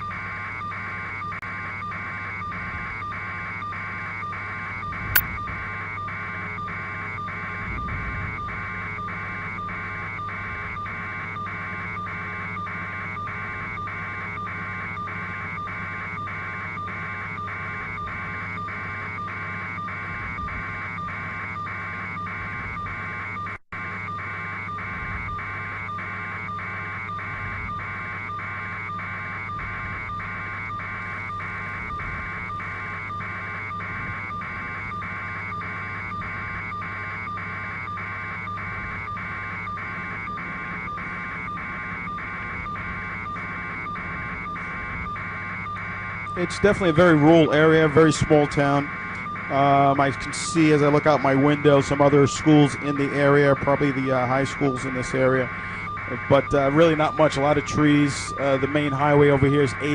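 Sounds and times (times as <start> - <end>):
helicopter cabin hum: 0.0 - 59.9
pulsing higher band: 42.0 - 59.9.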